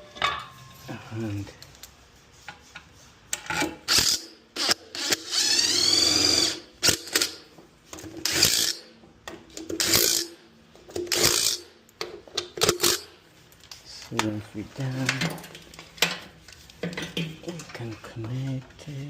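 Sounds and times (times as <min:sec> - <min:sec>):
power drill-driver bursts: 0:03.9 - 0:07.4, 0:08.2 - 0:08.9, 0:09.8 - 0:10.3, 0:11.1 - 0:11.6.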